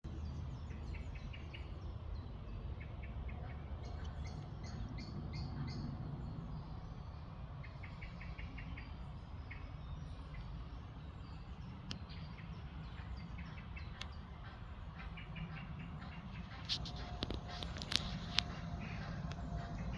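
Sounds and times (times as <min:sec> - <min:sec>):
small birds chirping: 0:00.1 - 0:19.9
steady low rumble: 0:00.1 - 0:19.9.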